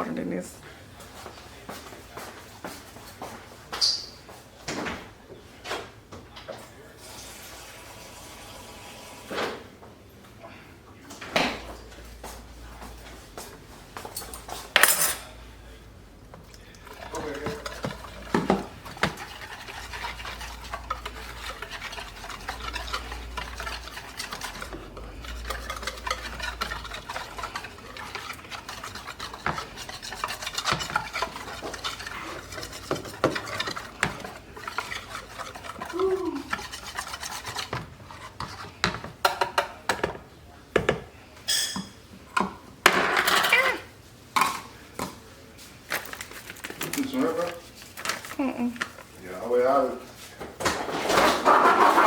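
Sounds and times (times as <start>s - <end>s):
whisk stirring thick batter: 15.6s - 40.2s, 46.0s - 50.2s
whisk knocking on container: 17.0s - 24.6s, 25.5s - 37.9s.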